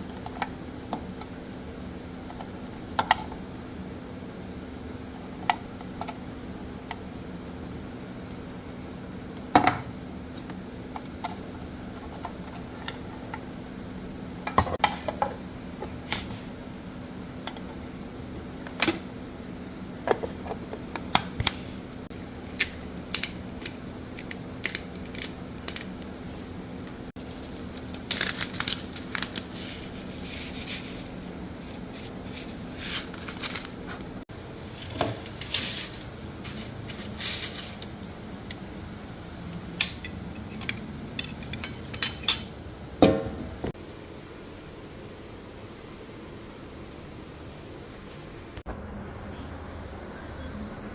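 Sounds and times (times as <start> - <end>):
low hum: 48.5 - 50.9.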